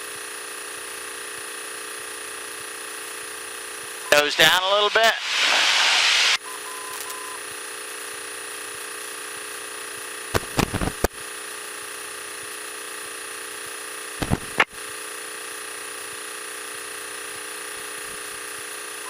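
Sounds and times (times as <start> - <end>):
airplane engine droning: 4.1 - 7.0.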